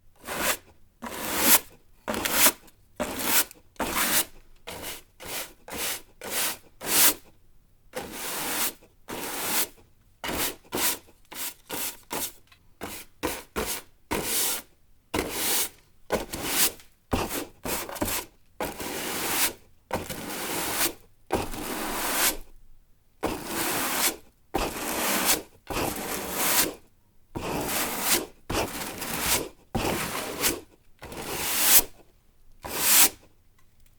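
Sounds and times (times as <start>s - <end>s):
broom sweeping a hard floor: 0.2s - 7.3s, 8.0s - 22.4s, 23.2s - 26.8s, 27.4s - 32.0s, 32.6s - 33.2s.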